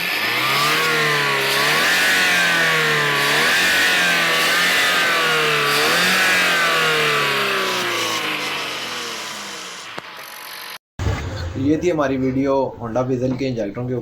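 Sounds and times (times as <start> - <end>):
car engine revving: 0.0 - 10.2.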